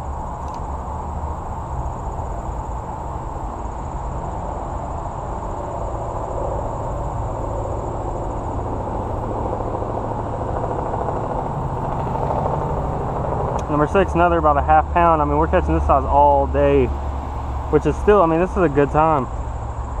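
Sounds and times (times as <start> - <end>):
highway traffic rumble: 0.0 - 20.0.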